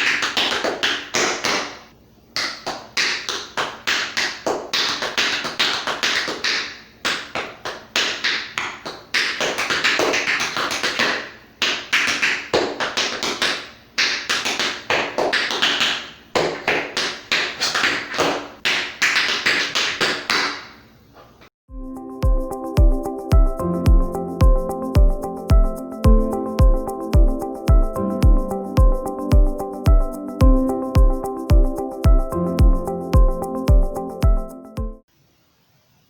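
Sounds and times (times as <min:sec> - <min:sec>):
tap shoes clicking on hard floor: 0:00.0 - 0:01.8, 0:02.4 - 0:20.8.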